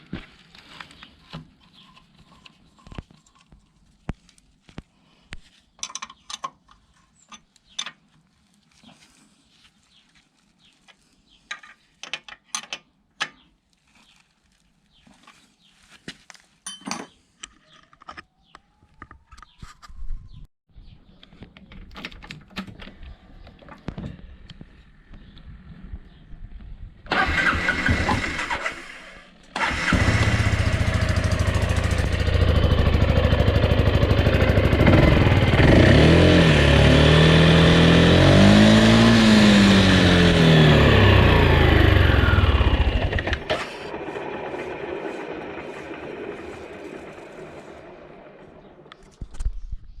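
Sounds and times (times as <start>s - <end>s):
scooter engine running and revving: 27.1s - 48.7s.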